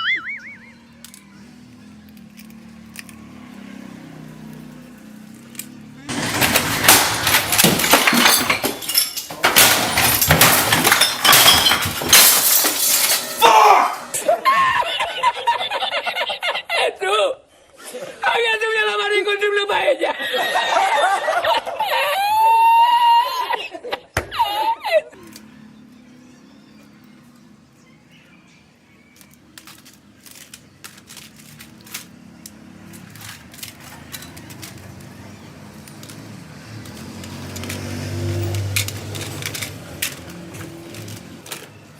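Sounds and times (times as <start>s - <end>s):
glass and plastic pieces clinking: 2.1s - 3.2s, 5.5s - 14.3s, 29.1s - 41.9s
packaging crinkling: 29.1s - 32.2s.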